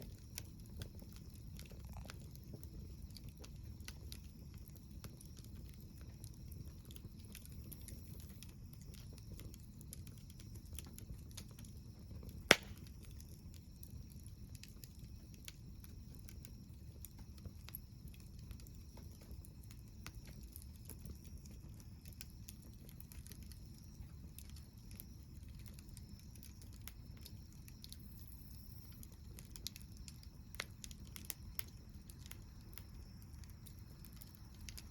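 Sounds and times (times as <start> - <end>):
campfire crackling: 0.0 - 34.9
loud sharp pop: 12.5 - 12.8.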